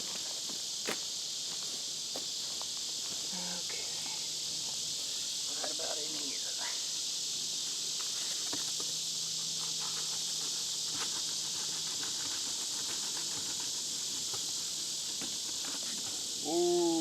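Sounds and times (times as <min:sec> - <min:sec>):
insects chorus: 0:00.0 - 0:17.0.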